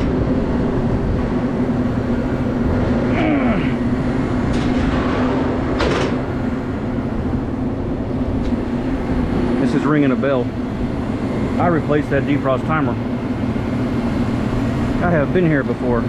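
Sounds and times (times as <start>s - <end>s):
freezer condensing unit humming: 0.0s - 16.0s.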